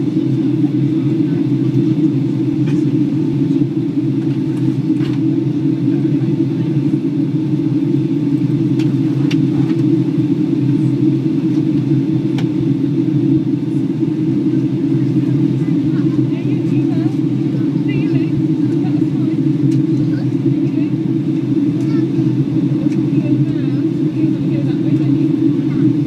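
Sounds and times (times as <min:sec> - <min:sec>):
airliner cabin engine rumble: 0:00.0 - 0:26.0.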